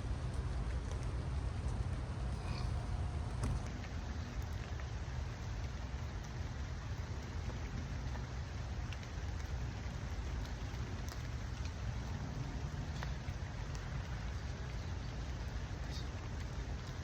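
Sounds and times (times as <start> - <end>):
sharp raindrop ticks: 0.0 - 17.0
steady rain hiss: 0.0 - 17.0.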